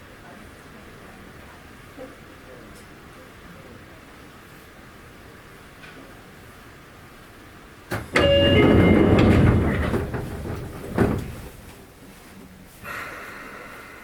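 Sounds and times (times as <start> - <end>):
door chime tones: 7.9 - 11.5
door click: 7.9 - 11.7
door thump: 7.9 - 11.8
sliding door rattling: 7.9 - 11.9.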